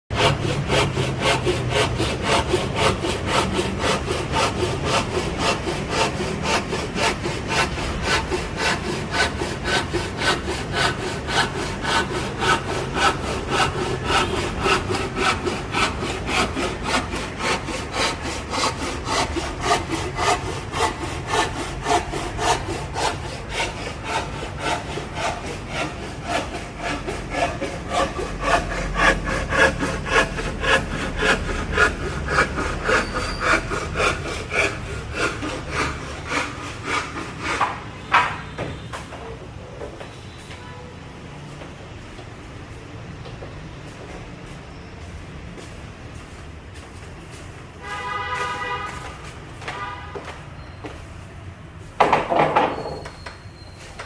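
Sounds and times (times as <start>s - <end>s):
hand saw cutting wood: 0.1s - 38.4s.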